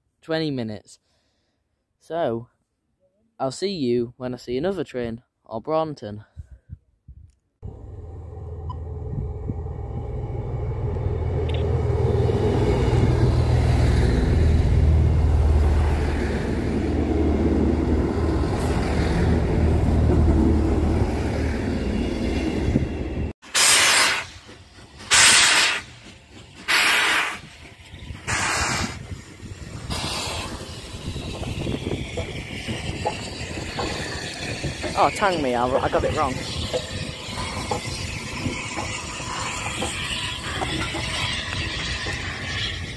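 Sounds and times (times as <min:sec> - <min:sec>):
train rumbling: 0:07.6 - 0:42.9
steam locomotive hissing chuffs: 0:09.0 - 0:42.9.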